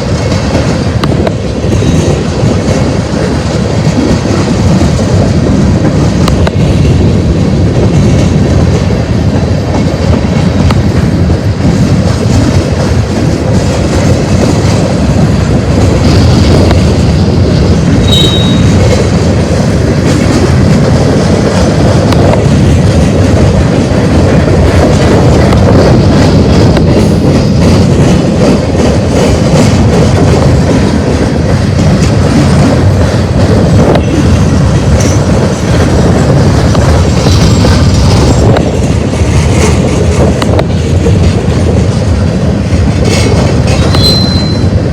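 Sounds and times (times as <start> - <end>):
train wheels clattering on track: 0.0 - 44.9
high wheel squeal: 18.0 - 18.8, 43.8 - 44.8.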